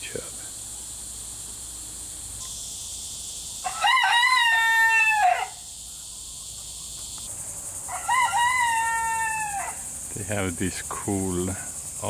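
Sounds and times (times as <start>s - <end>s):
rooster crowing: 3.6s - 6.3s, 7.7s - 9.9s.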